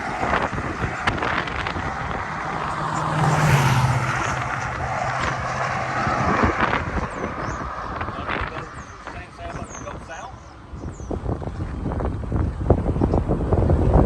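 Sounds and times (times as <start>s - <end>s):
car engine hum: 0.0s - 14.0s
road and wind noise: 0.0s - 14.0s.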